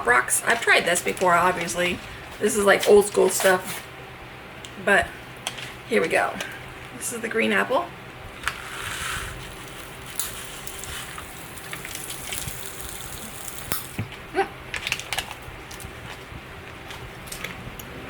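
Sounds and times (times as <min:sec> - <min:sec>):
popping candy crackling: 0:08.4 - 0:16.2
candy packet handling: 0:14.7 - 0:17.6.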